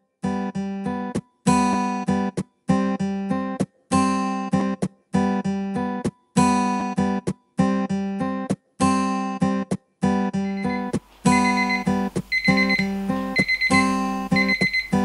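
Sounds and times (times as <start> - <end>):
acoustic guitar strumming chords: 10.2 - 15.0.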